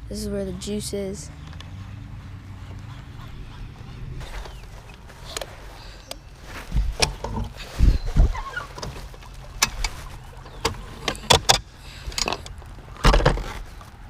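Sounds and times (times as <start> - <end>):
knocks and clicks of gear: 4.2 - 14.0.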